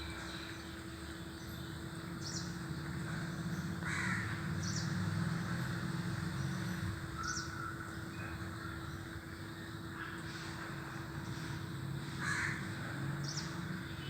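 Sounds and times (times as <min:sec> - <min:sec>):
crow cawing: 0:03.8 - 0:04.4, 0:12.2 - 0:12.6.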